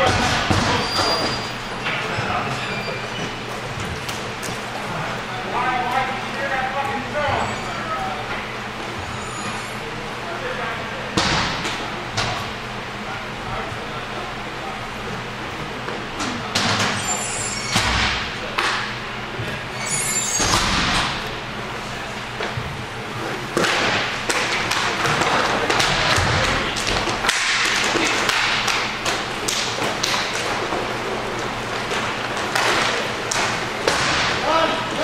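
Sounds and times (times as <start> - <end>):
hockey sticks and puck knocking: 23.5 - 34.4
puck hitting rink boards: 23.5 - 34.7.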